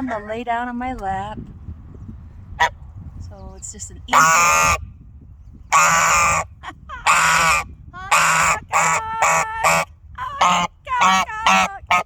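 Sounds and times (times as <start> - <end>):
goose honking: 4.1 - 4.8, 5.7 - 12.0.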